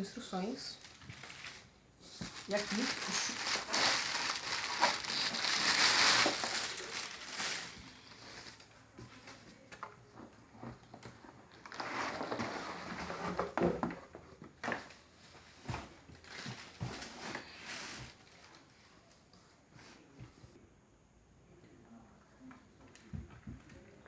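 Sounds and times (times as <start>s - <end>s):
packaging crinkling: 0.7s - 8.7s.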